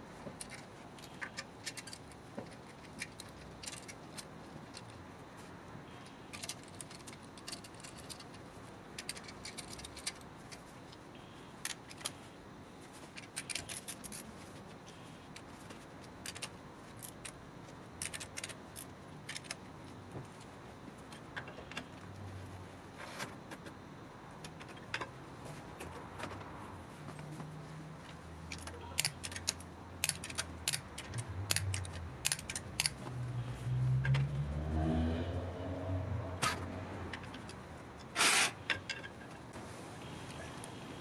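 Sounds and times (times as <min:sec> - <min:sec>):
metal parts clicking and clinking: 0:00.3 - 0:05.0, 0:06.0 - 0:10.7, 0:13.1 - 0:14.5, 0:16.0 - 0:19.6, 0:28.4 - 0:33.1.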